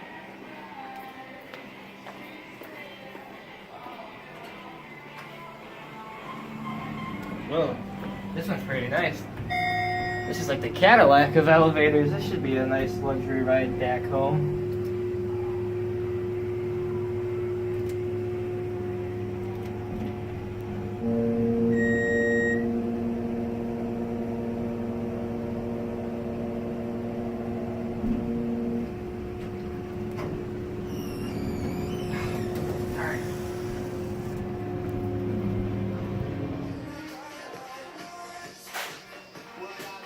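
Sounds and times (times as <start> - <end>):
elevator steady hum: 0.0 - 37.0
loud droning hum: 4.7 - 37.0
short high beep: 9.5 - 10.6, 21.4 - 22.8.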